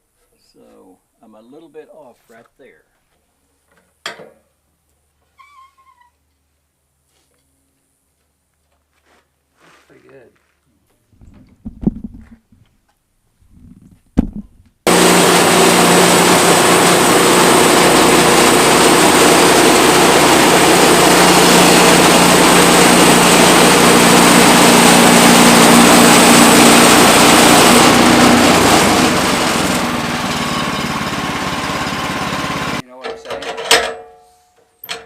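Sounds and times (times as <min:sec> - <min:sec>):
small gas engine running: 0:14.9 - 0:32.8.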